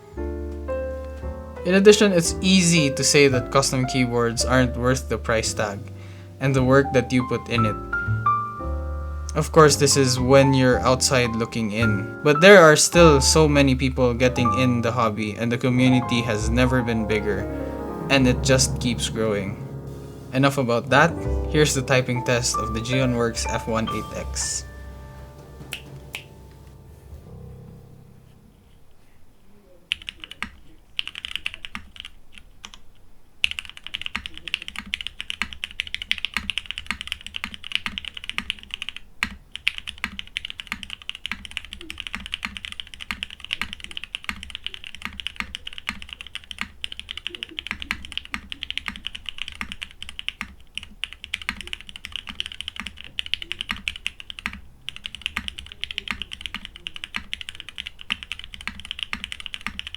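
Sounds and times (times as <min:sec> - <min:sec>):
mechanical keyboard typing: 0:29.9 - 0:59.9.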